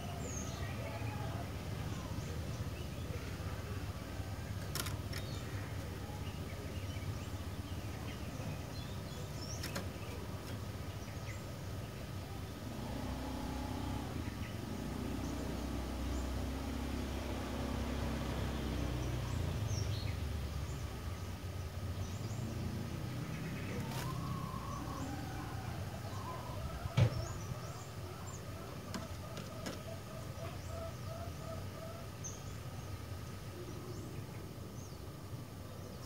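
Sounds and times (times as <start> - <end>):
passing motor vehicle rumble: 0.0 - 36.0
faint bird chirps: 23.2 - 36.0.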